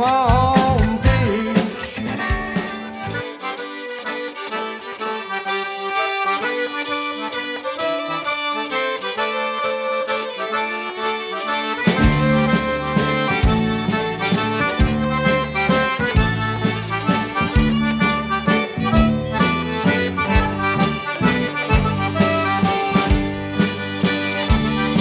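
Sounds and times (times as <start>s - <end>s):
band with bass and drums: 0.0s - 3.3s, 11.7s - 25.0s
accordion playing chords and melody: 0.0s - 25.0s.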